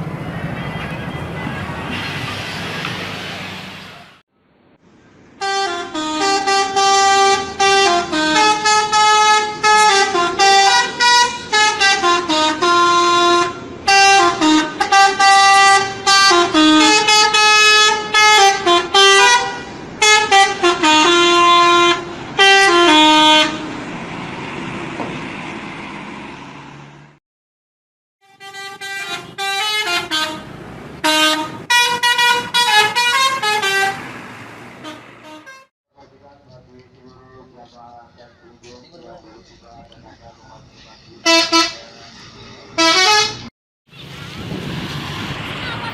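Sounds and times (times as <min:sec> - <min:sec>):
vehicle noise rushing: 0:00.0 - 0:27.2, 0:28.6 - 0:35.6, 0:40.4 - 0:45.9
multi-tone musical bus horn: 0:05.4 - 0:23.8, 0:28.2 - 0:34.1, 0:34.8 - 0:35.7, 0:41.2 - 0:42.0, 0:42.7 - 0:43.5.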